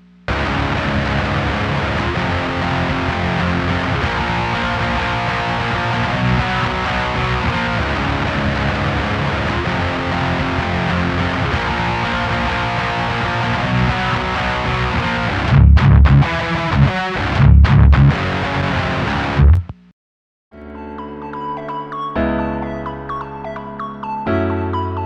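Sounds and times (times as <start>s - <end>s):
distorted electric guitar riff: 0.0s - 19.9s
keyboard: 20.6s - 25.0s.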